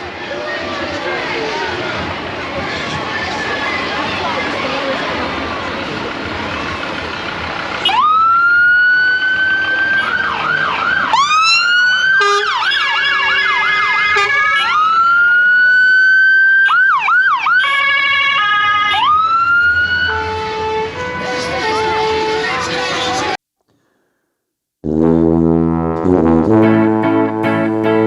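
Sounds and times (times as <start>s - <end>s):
electronic sirens wailing and yelping: 7.8s - 20.1s.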